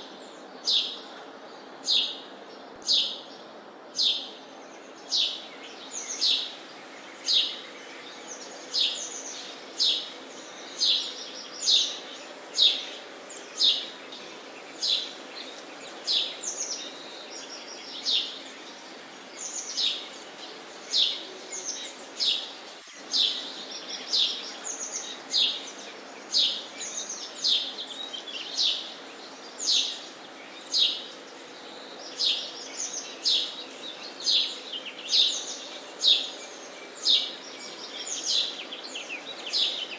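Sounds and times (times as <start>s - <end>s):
faint steady hum: 0.0s - 39.9s
sparrow chirping: 0.6s - 1.0s, 1.8s - 3.3s, 4.0s - 4.4s, 5.0s - 6.6s, 7.2s - 7.8s, 8.4s - 14.0s, 20.9s - 31.3s, 32.1s - 39.9s.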